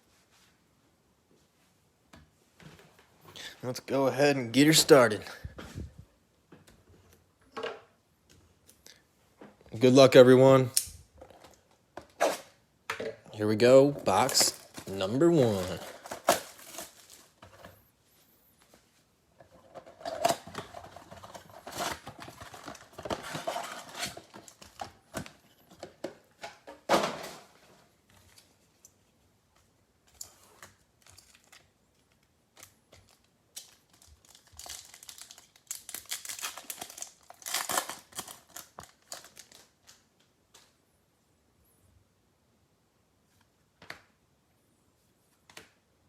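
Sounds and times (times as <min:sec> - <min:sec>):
plastic wrap crinkling and tearing: 0:14.0 - 0:17.4, 0:30.3 - 0:40.0.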